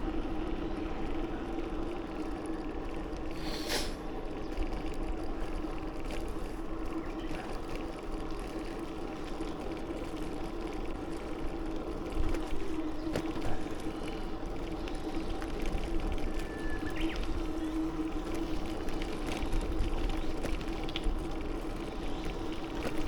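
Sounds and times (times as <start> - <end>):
tyres rolling on pavement: 0.0 - 23.0.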